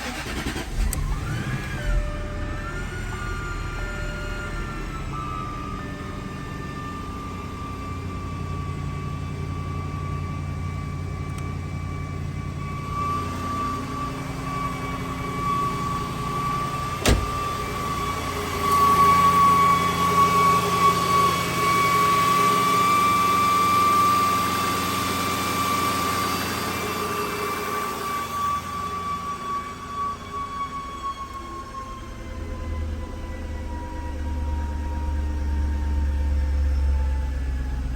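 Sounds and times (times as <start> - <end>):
engine running: 0.0 - 27.3
alternator whine: 1.9 - 22.0.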